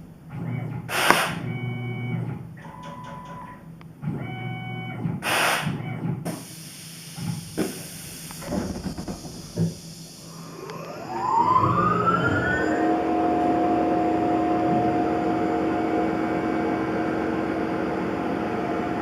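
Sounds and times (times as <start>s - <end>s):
hiss bursts: 0.9s - 1.4s, 5.2s - 10.8s
mill cutting tone: 8.3s - 18.6s.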